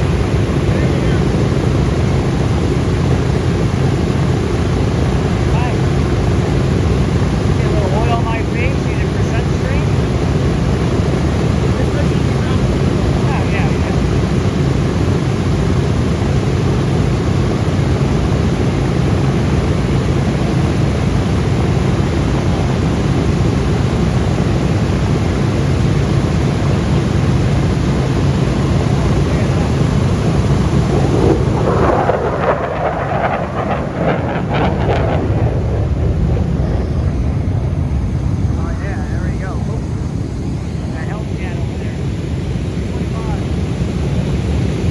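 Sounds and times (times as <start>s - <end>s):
jet engines roaring: 0.0s - 44.9s.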